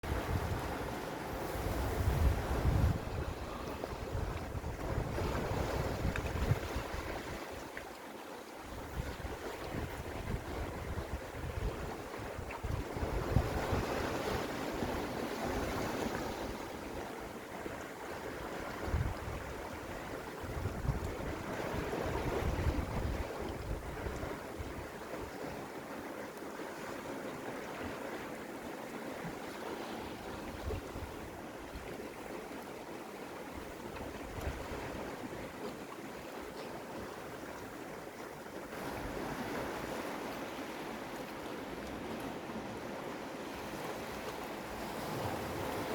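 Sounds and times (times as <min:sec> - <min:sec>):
wind buffeting microphone: 0:00.0 - 0:07.6, 0:08.7 - 0:17.0, 0:17.7 - 0:25.5
sea waves on rocky shore: 0:00.0 - 0:45.9.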